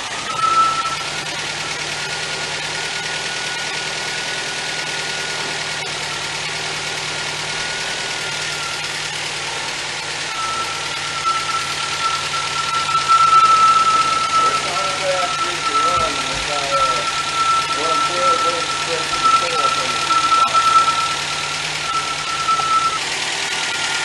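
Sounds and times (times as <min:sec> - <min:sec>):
car engine idling: 0:00.0 - 0:24.0
high whine: 0:10.3 - 0:23.0.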